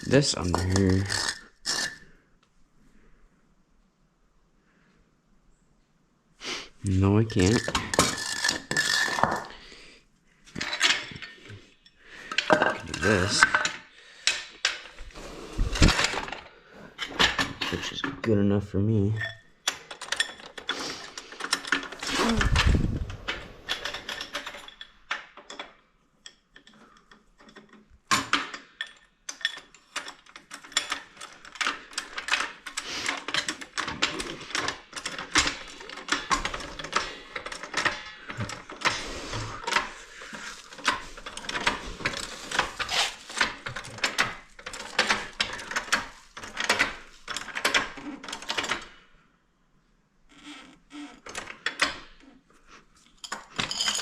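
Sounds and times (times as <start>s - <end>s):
metallic clicks and rattles: 0.0s - 2.0s, 7.3s - 9.6s, 10.5s - 15.0s, 19.2s - 49.0s.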